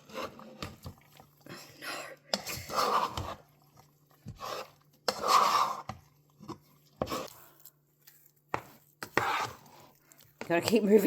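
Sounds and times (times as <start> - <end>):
spoon knocking and scraping a pot: 2.3 - 7.3, 8.5 - 11.0.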